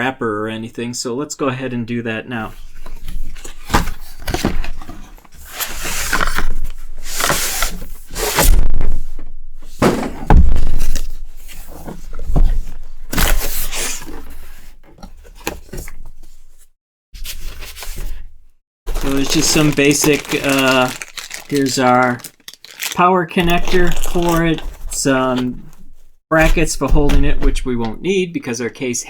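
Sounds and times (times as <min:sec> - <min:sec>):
packaging rustling and scraping: 0:02.6 - 0:09.1, 0:09.7 - 0:16.4, 0:17.2 - 0:26.2.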